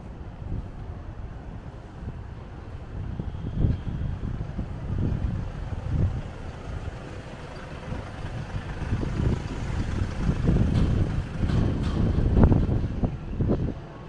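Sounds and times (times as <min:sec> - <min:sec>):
city street traffic: 0:00.0 - 0:14.0
wind buffeting microphone: 0:00.0 - 0:14.0.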